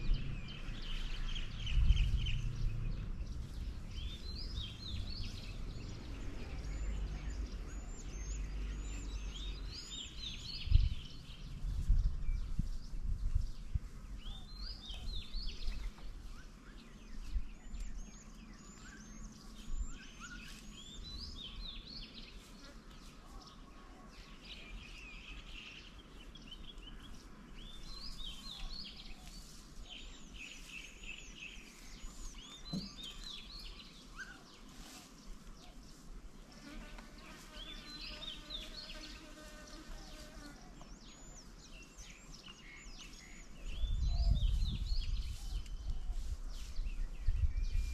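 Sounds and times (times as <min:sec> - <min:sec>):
low rumbling: 0:00.0 - 0:14.0
songbirds chirping: 0:00.0 - 0:47.9.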